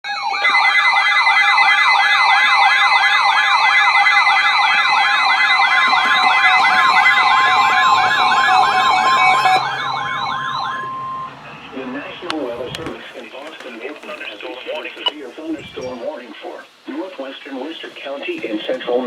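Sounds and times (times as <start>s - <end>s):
warbling electronic siren: 0.1s - 13.0s, 15.6s - 16.0s
steady electronic tones: 4.2s - 16.2s.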